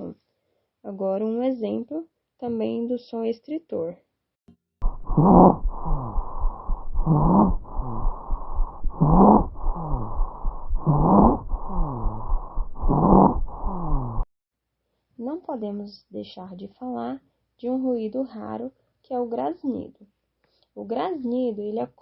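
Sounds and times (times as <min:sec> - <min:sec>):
harsh stridor breath noise: 0:04.8 - 0:14.3
soft breath noise: 0:04.8 - 0:14.3.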